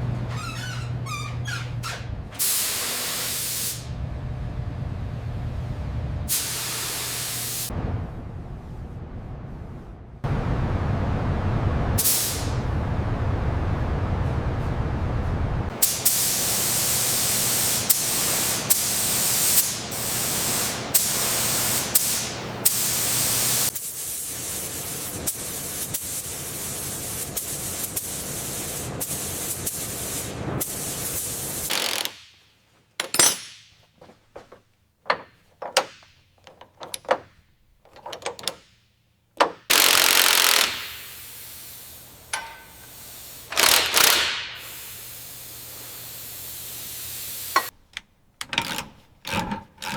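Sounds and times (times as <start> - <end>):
hissing air blasts: 2.4 - 3.9, 6.3 - 7.7, 12.0 - 12.6, 15.7 - 32.3, 39.6 - 47.8
fast mechanical rattle: 35.1 - 38.7, 43.5 - 44.4
spray hissing: 40.8 - 43.6, 44.4 - 47.8.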